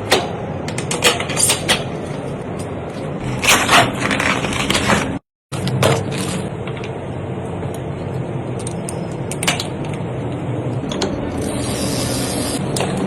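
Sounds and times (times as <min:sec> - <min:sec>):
mechanical whirring of bicycle parts: 0:03.2 - 0:07.0, 0:10.8 - 0:13.0.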